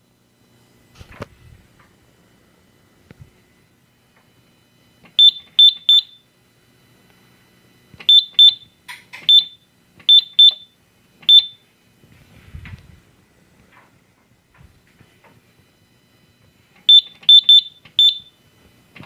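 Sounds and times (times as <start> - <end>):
short high-pitched keypad beeps: 5.2 - 6.2, 8.1 - 8.7, 9.3 - 10.7, 11.3 - 11.6, 16.9 - 18.3.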